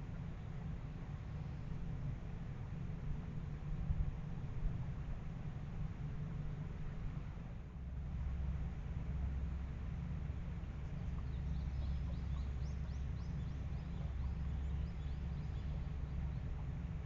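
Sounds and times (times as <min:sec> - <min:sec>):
steady low rumble: 0:00.0 - 0:17.0
small birds chirping: 0:10.8 - 0:17.0.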